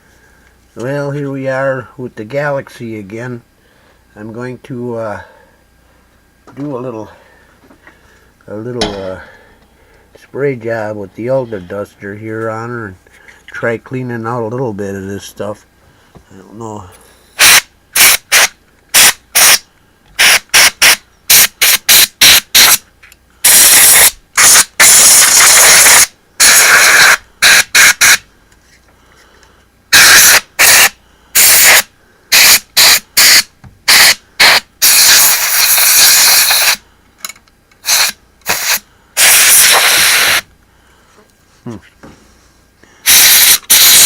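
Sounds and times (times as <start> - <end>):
compressed air duster spraying: 20.2 - 22.8, 23.5 - 28.2, 29.9 - 36.8, 37.8 - 40.4, 43.0 - 44.0.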